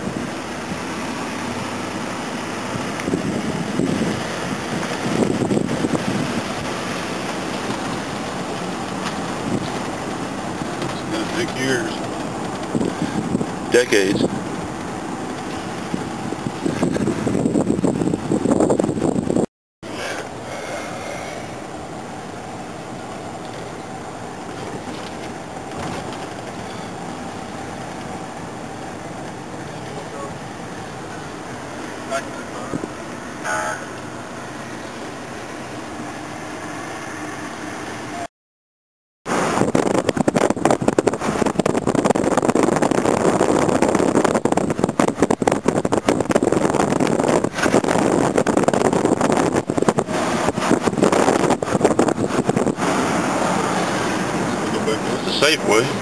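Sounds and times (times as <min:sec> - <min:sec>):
wind buffeting microphone: 0:00.0 - 0:19.5, 0:39.3 - 0:56.0
car road and engine noise: 0:00.0 - 0:38.3, 0:39.2 - 0:56.0.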